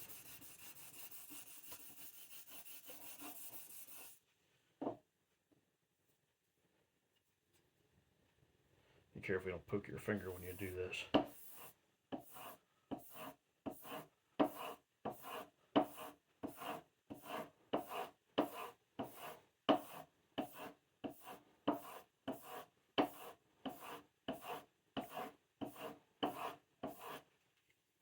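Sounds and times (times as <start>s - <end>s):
chisel rubbing on strop: 0.0s - 4.2s.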